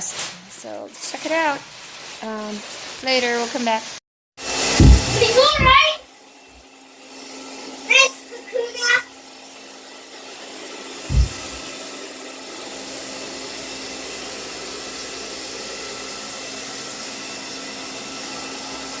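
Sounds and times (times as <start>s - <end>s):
low thump: 4.8s - 5.8s, 11.1s - 11.6s
mechanical whir: 11.1s - 11.8s.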